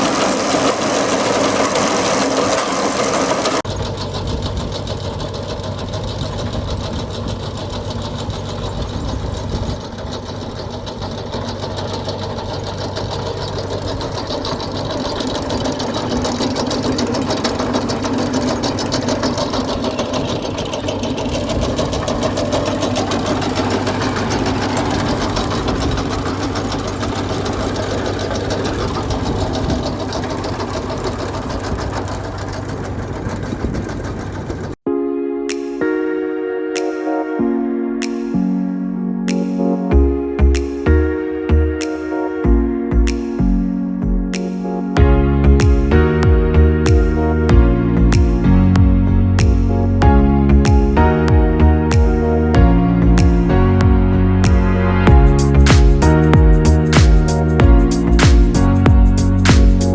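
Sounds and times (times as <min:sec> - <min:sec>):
engine running with clatter: 0:00.0 - 0:34.8, 0:45.0 - 0:59.9.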